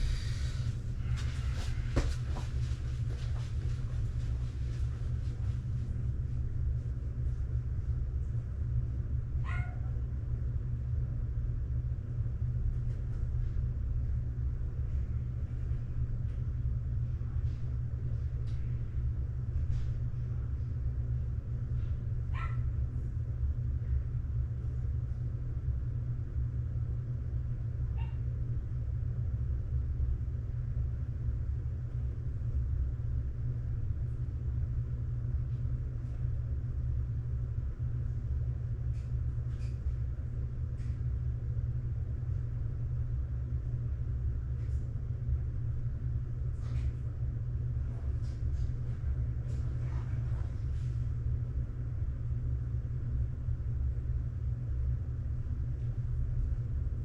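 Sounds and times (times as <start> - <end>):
steady low rumble: 0.0 - 57.0
dog yelping: 9.4 - 9.8.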